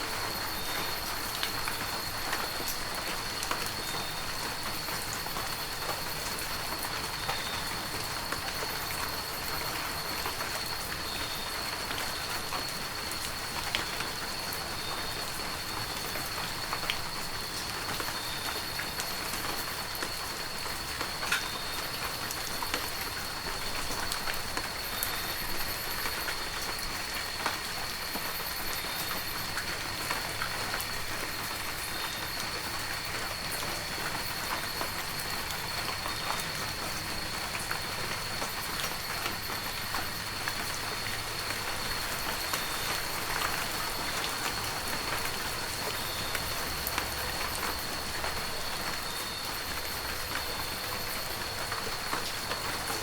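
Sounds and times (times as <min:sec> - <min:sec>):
heavy rain falling: 0:00.0 - 0:53.0.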